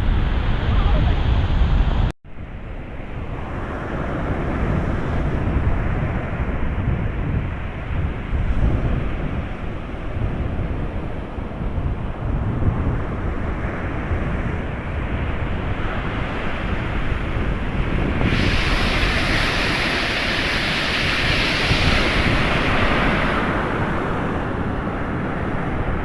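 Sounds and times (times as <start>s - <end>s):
wind rumbling on microphone: 0.0s - 26.0s
surf washing on shore: 3.0s - 26.0s
breaking wave hiss: 17.9s - 24.9s.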